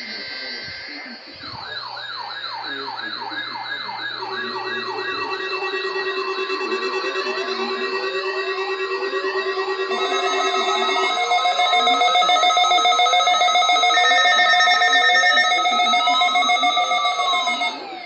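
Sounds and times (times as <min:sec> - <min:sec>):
rising siren-like sweep: 0:00.0 - 0:18.0
weather radio alarm tones: 0:00.0 - 0:18.0.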